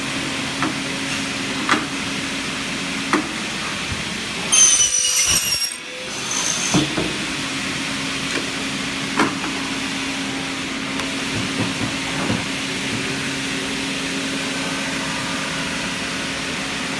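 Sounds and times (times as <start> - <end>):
cutting saw humming: 4.5 - 7.4.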